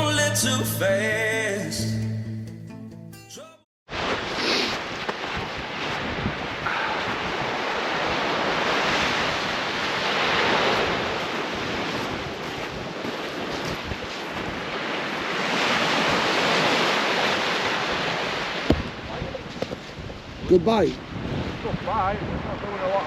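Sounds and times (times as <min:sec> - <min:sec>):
sea surf washing ashore: 0:03.9 - 0:23.0
wind buffeting microphone: 0:04.9 - 0:23.0.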